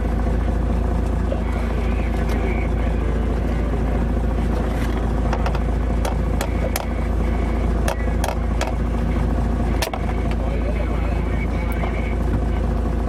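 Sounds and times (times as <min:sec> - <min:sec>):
boat engine running: 0:00.0 - 0:13.0
sharp clicks and knocks: 0:04.9 - 0:07.0, 0:07.8 - 0:08.8, 0:09.8 - 0:10.4.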